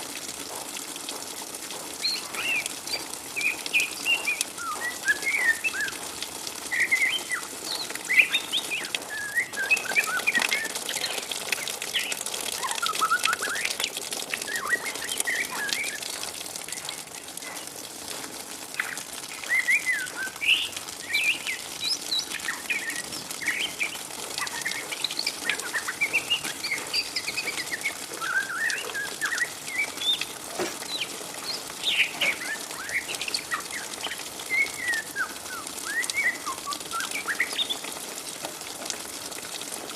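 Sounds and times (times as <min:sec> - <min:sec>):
bird twittering: 0:18.8 - 0:37.8.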